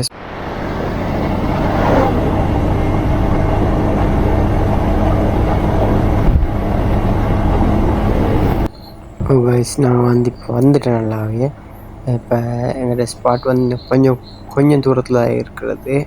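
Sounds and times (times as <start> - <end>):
rushing wind noise: 0.0 - 12.3
motorcycle engine drone: 0.0 - 16.0.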